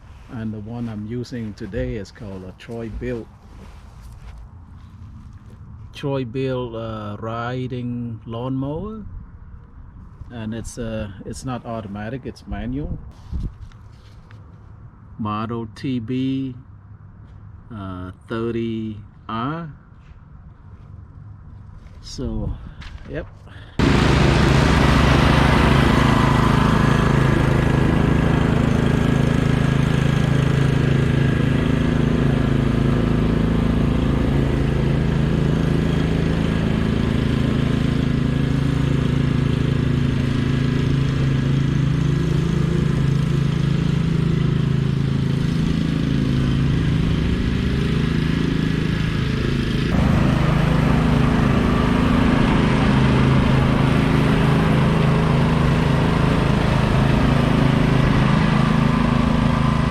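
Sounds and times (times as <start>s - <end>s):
riding lawn mower engine running: 0.0s - 5.9s, 23.8s - 59.9s.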